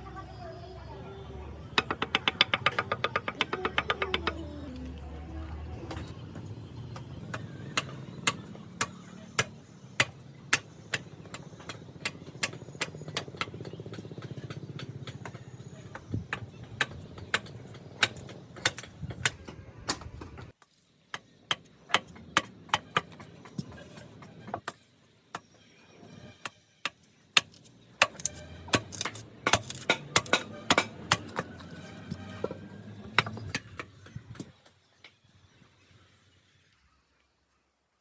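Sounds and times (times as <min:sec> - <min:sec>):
sharp knocks and taps: 0:01.8 - 0:04.4.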